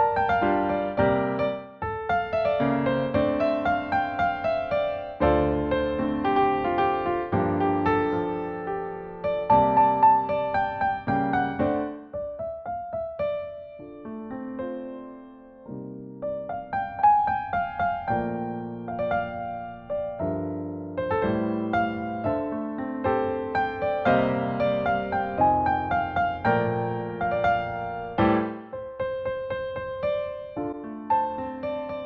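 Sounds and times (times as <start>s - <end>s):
soft piano music: 0.0s - 32.0s.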